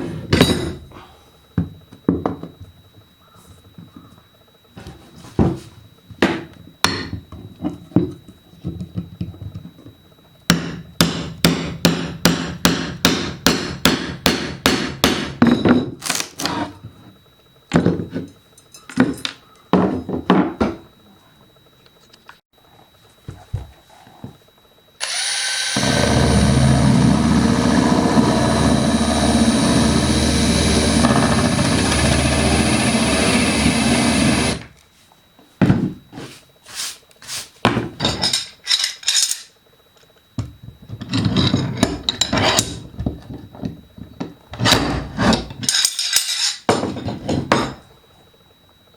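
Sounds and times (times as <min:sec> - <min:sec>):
power drill cutting into wood: 0:25.0 - 0:34.6.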